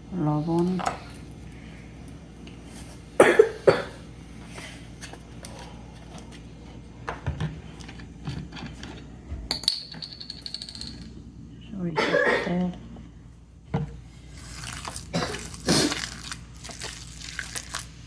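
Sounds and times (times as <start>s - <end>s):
woman coughing: 3.2s - 4.0s, 12.0s - 12.7s, 15.1s - 16.1s.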